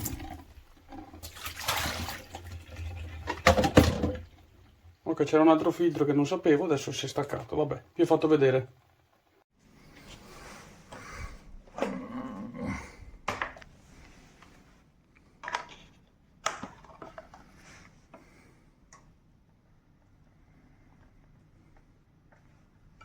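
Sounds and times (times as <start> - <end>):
plastic parts knocking and clattering: 2.9 - 4.5, 15.4 - 17.6.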